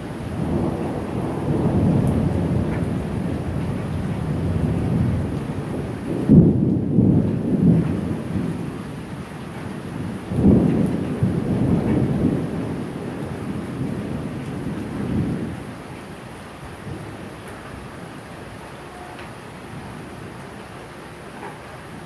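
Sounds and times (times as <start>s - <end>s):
rolling thunder: 0.0s - 16.0s
steady rain: 0.0s - 22.0s.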